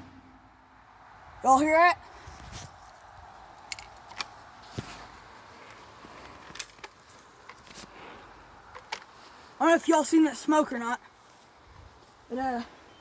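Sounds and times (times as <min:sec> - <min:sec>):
light rustles of handling gear: 0:02.2 - 0:08.0, 0:11.1 - 0:12.6.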